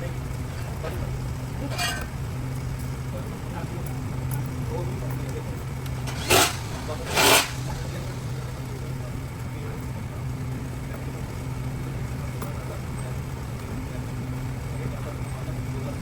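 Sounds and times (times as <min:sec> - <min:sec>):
factory machinery humming: 0:05.6 - 0:12.2.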